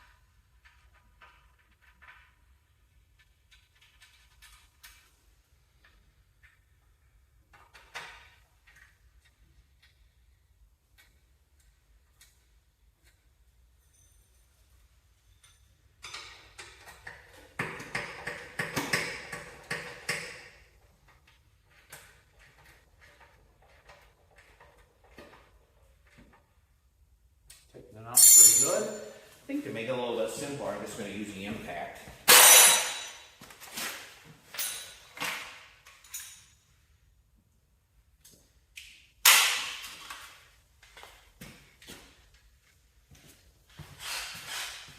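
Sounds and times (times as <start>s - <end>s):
hand tools clanking on metal: 28.2s - 29.2s, 32.3s - 33.3s
impact wrench bursts: 32.2s - 33.2s.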